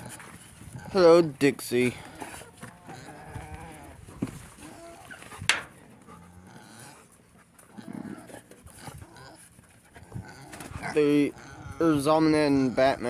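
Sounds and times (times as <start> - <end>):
dog panting: 5.0 - 7.7.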